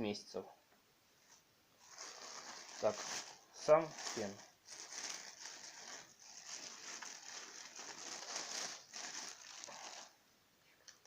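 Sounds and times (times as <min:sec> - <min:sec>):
packaging crinkling: 0:01.8 - 0:10.2.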